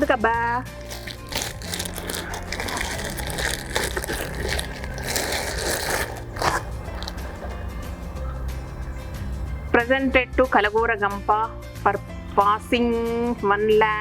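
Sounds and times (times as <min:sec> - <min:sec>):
packing paper crinkling: 0:00.0 - 0:07.5.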